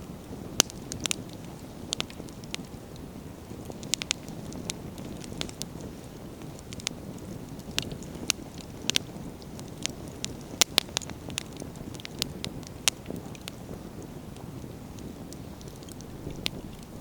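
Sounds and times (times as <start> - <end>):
firewood crackling and popping: 0.0 - 17.0
flames rumbling: 0.0 - 17.0.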